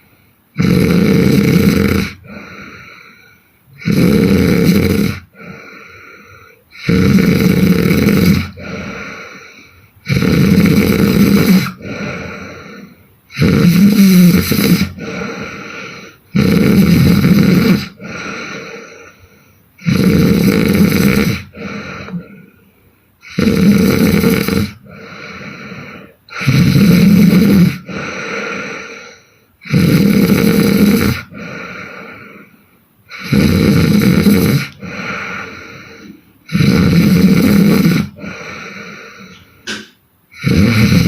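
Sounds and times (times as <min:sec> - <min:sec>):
woman snoring loudly: 0:00.0 - 0:22.6, 0:23.2 - 0:32.5, 0:33.1 - 0:39.4, 0:40.3 - 0:41.0.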